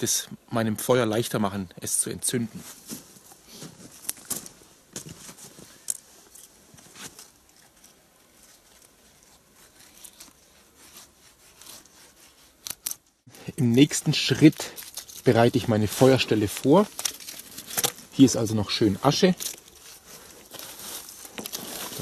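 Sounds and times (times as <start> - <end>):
knife shaving wooden stick: 6.2 - 22.0.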